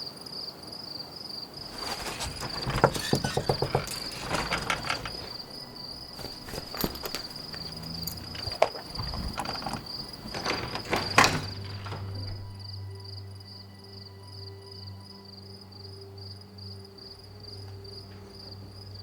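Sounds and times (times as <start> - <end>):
crickets chirping: 0.0 - 19.0
knocks and thuds: 1.7 - 12.6.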